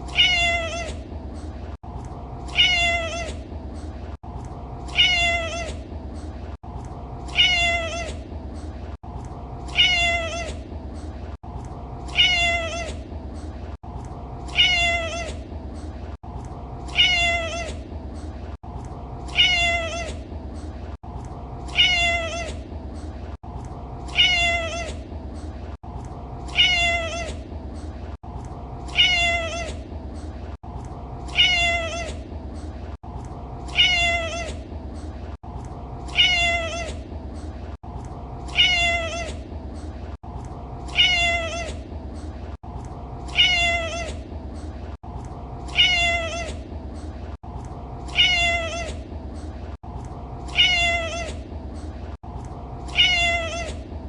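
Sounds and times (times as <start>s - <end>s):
cat meowing: 0.0s - 1.0s, 2.5s - 3.4s, 4.9s - 5.8s, 7.3s - 8.2s, 9.7s - 10.6s, 12.1s - 13.0s, 14.5s - 15.4s, 16.9s - 17.8s, 19.3s - 20.2s, 21.7s - 22.6s, 24.1s - 25.0s, 26.5s - 27.4s, 28.9s - 29.8s, 31.3s - 32.2s, 33.7s - 34.6s, 36.1s - 37.0s, 38.5s - 39.4s, 40.9s - 41.8s, 43.3s - 44.2s, 45.7s - 46.6s, 48.1s - 49.0s, 50.5s - 51.4s, 52.9s - 53.8s.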